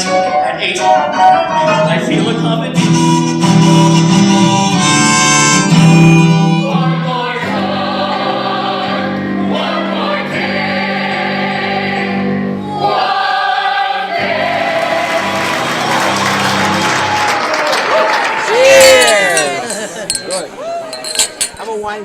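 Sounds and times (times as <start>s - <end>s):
group singing with instruments: 6.7s - 15.6s.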